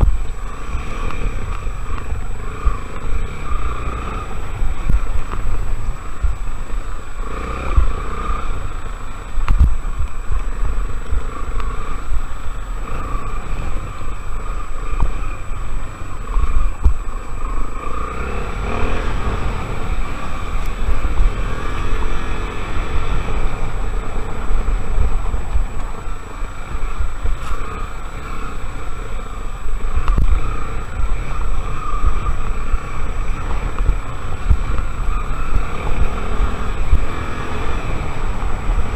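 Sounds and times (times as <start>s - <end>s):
motorcycle engine running: 0.0s - 38.9s
wind rumbling on microphone: 0.0s - 38.9s.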